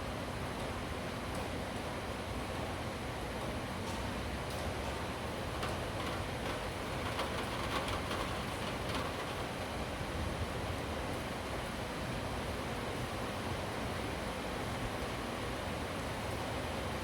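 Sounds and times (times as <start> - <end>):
steady rain: 3.5 - 15.4.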